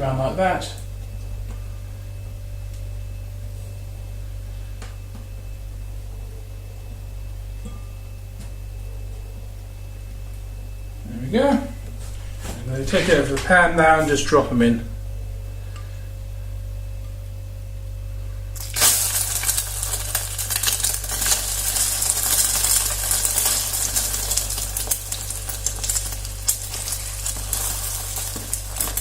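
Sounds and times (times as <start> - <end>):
low steady hum: 0.0 - 29.0
bread sizzling in hot oil: 18.5 - 29.0
oil crackling and spitting: 18.6 - 29.0.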